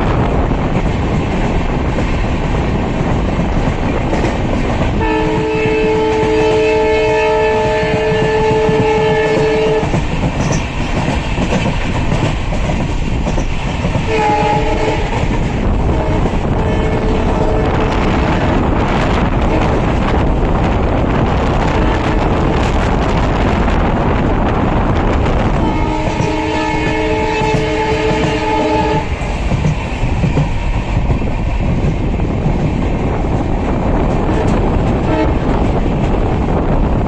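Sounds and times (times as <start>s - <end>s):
train wheels rumbling on rails: 0.0s - 37.0s
locomotive horn chord: 5.0s - 9.9s, 14.1s - 15.2s, 25.6s - 29.1s.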